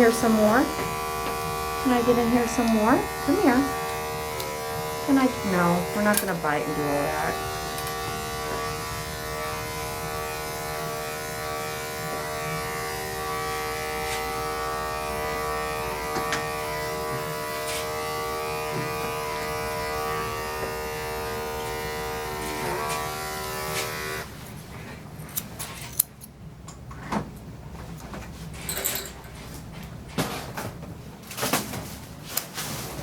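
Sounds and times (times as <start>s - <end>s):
electric clippers buzzing: 0.0s - 24.4s.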